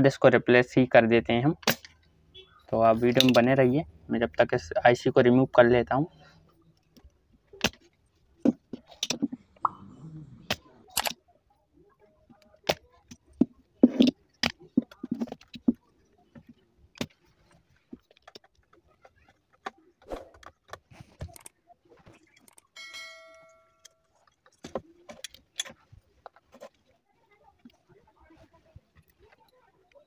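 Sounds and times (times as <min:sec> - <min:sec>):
short metallic ring: 0:22.8 - 0:24.0.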